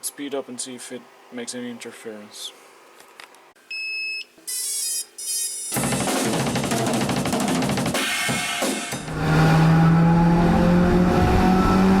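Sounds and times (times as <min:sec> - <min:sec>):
motor whine rising in pitch: 0:09.0 - 0:12.0.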